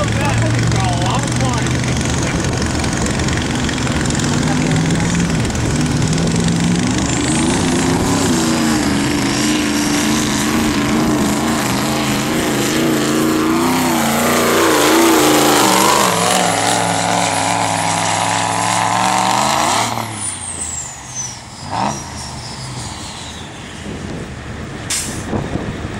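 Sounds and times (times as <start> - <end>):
diesel truck engine under load: 0.0 - 25.9.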